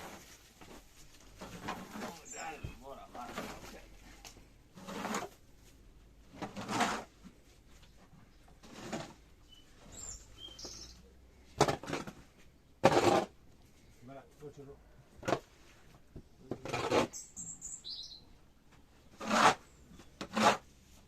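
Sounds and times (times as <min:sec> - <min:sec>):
high bird chirps: 0:09.4 - 0:11.0, 0:17.1 - 0:18.3.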